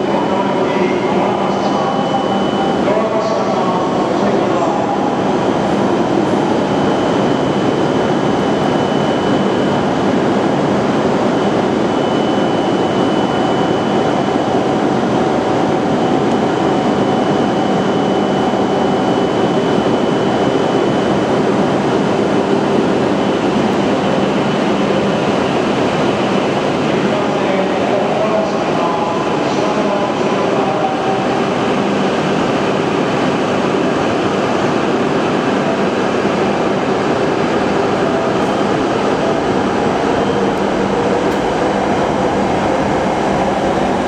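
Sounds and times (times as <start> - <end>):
thin high whine: 35.5 - 44.0
train rushing: 36.5 - 44.0.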